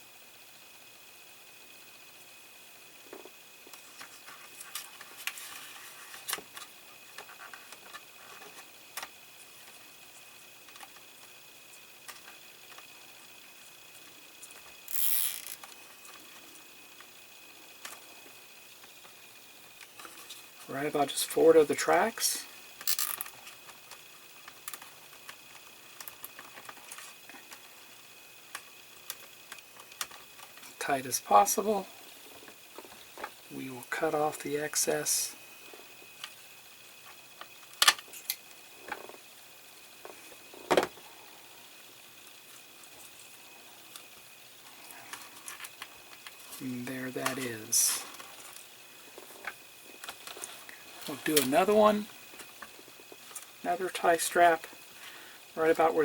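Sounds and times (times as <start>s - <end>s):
faint high whine: 0.0s - 56.0s
hands handling small plastic parts: 14.4s - 16.4s, 22.8s - 27.6s.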